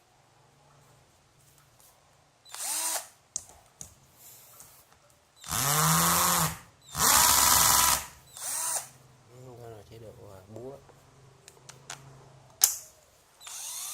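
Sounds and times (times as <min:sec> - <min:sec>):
cordless drill whirring: 0:02.5 - 0:03.2, 0:05.4 - 0:09.0, 0:13.4 - 0:13.9.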